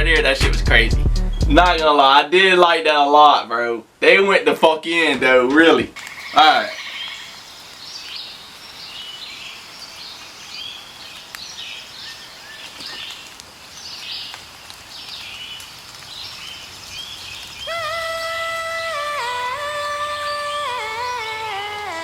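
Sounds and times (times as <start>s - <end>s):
faint outdoor hiss: 1.4s - 22.0s
birds chirping and trilling: 6.0s - 22.0s.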